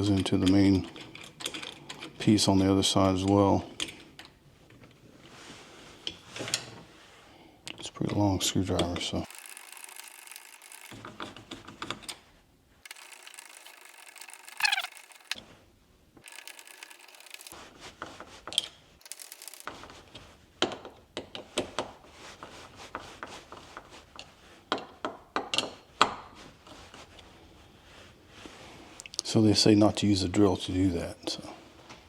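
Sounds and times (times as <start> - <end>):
brief squeak: 14.6 - 14.9.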